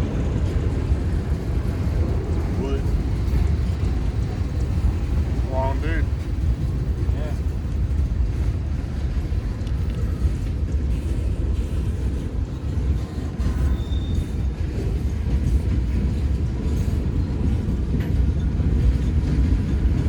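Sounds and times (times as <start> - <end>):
train wheels rumbling on rails: 0.0 - 20.0
faint high squeal: 13.5 - 14.5.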